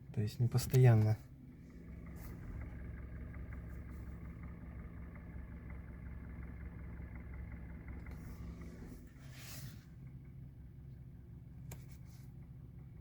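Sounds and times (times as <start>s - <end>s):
car engine idling: 0.0s - 13.0s
light irregular engine knock: 0.6s - 9.0s.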